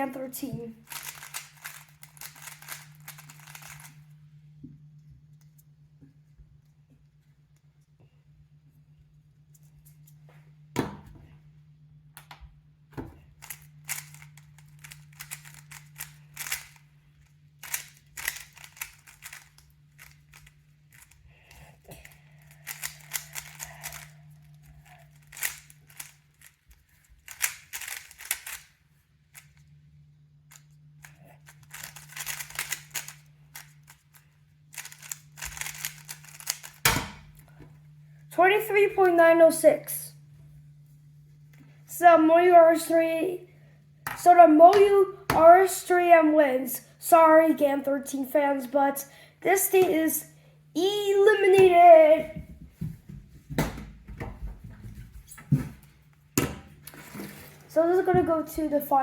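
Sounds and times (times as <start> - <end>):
steady low hum: 0.0 - 59.0
plastic puzzle cube clicking: 17.6 - 21.1, 31.7 - 33.2, 34.8 - 36.8.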